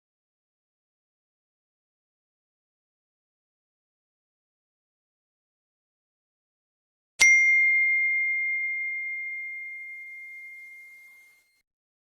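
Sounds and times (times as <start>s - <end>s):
bell-like notification ding: 7.2s - 11.6s.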